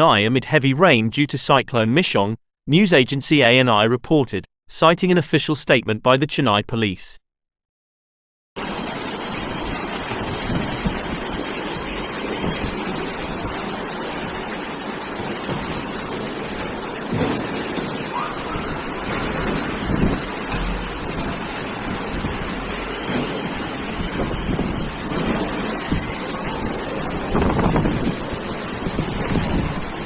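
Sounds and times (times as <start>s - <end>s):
storm wind and water rushing: 8.6s - 30.0s
wind buffeting microphone: 9.0s - 14.5s, 15.6s - 30.0s.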